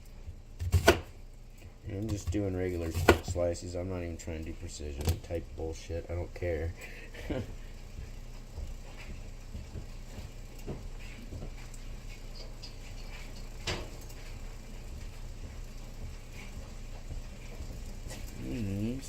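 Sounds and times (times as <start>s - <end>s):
knife slicing onion on board: 0.6s - 1.2s, 2.0s - 3.4s.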